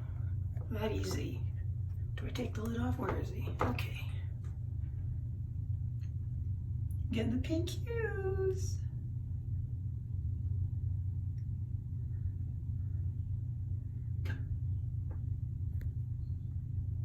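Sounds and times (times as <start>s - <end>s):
low hum: 0.0s - 17.0s.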